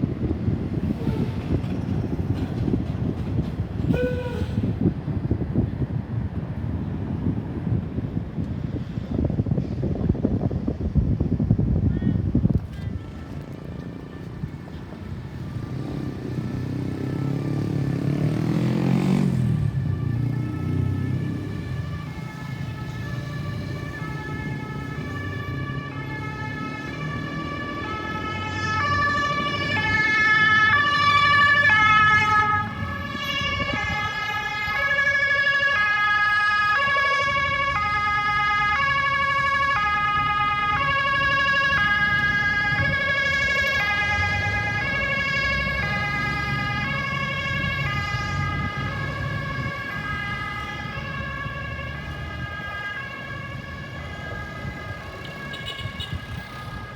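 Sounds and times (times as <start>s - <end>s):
ambulance siren: 13.0s - 56.9s
vehicle passing: 13.0s - 56.9s.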